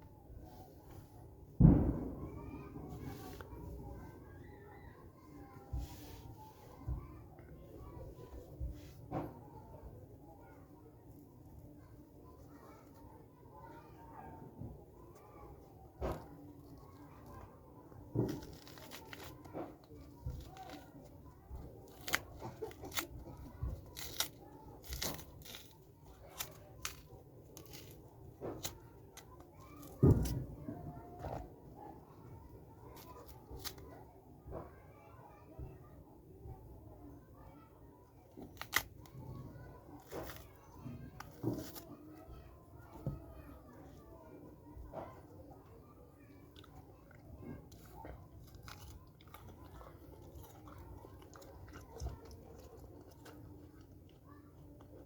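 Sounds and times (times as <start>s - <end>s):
clay being chewed with crunches: 15.2s - 31.5s, 32.8s - 34.0s, 38.2s - 43.6s, 44.9s - 55.0s.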